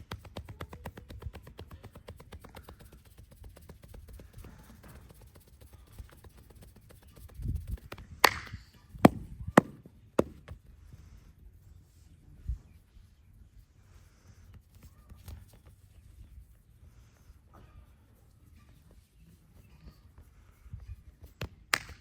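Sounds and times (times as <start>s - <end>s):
hand slaps of massage: 0.0s - 4.3s, 7.7s - 10.5s, 21.4s - 22.0s.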